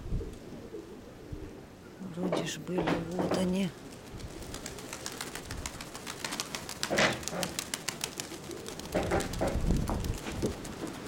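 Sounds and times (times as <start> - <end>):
wind buffeting microphone: 0.0 - 0.6, 3.4 - 6.1, 8.8 - 11.0
pigeons cooing: 0.0 - 2.2, 3.6 - 11.0.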